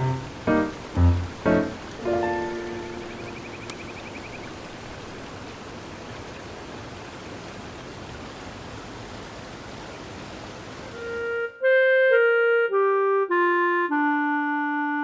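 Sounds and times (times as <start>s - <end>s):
music: 0.0s - 3.4s, 11.0s - 15.0s
steady rushing hiss: 0.0s - 5.4s.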